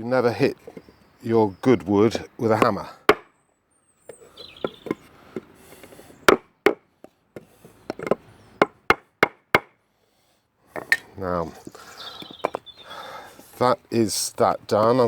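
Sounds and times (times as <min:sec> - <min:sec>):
hammer knocking on wooden block: 0:02.5 - 0:03.3, 0:06.3 - 0:06.8, 0:07.4 - 0:09.7.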